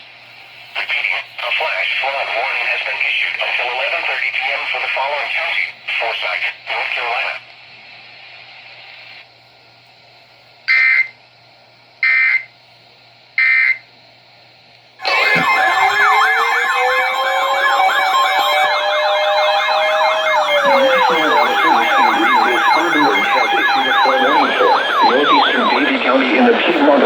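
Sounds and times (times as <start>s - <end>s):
siren-like alert tone: 15.0s - 27.0s.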